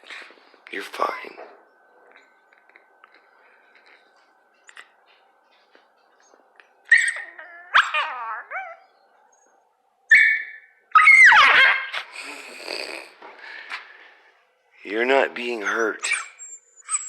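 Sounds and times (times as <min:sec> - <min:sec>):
dog whining and yelping: 0:06.9 - 0:09.5, 0:10.1 - 0:12.1, 0:16.0 - 0:17.0.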